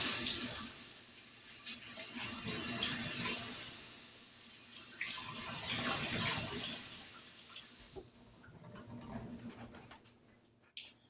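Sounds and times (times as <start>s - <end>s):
faucet running: 0.0s - 8.1s.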